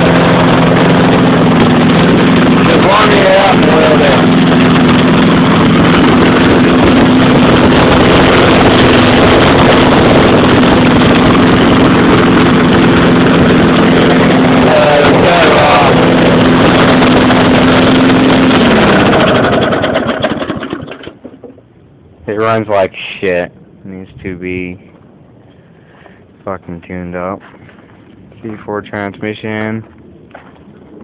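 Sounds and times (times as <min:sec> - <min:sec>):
lawn mower engine running: 0:00.0 - 0:21.7.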